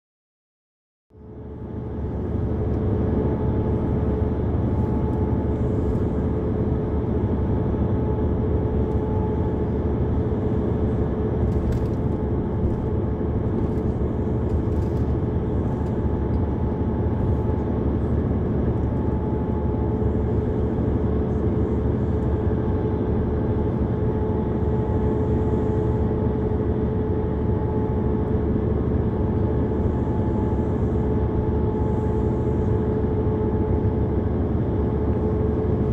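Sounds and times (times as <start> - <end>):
bus engine rumble: 1.1 - 35.9
humming drone: 1.2 - 35.9.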